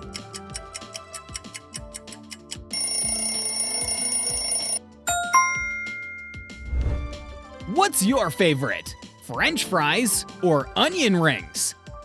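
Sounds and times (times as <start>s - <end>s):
background music: 0.0s - 12.0s
alarm bell ringing: 2.7s - 6.7s
bright chime: 5.1s - 7.0s.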